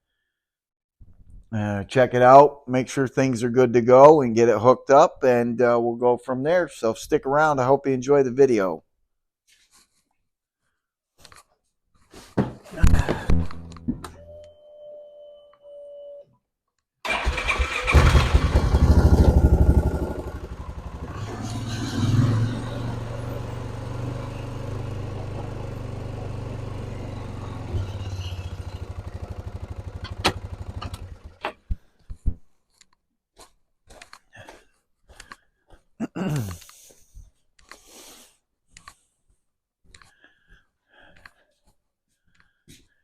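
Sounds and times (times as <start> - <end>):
tractor engine starting and idling: 17.1 - 31.6.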